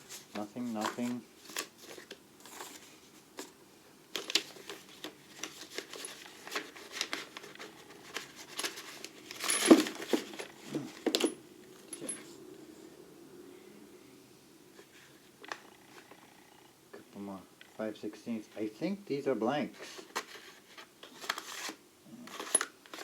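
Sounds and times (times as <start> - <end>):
small metal tools clinking: 5.7 - 12.3.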